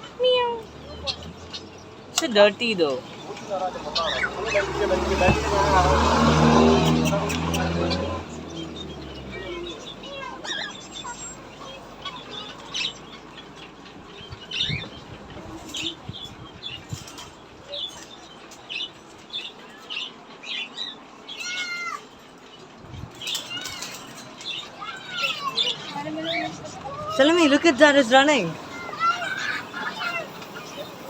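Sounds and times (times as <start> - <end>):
small animals high cries: 21.3 - 22.2, 28.6 - 31.0.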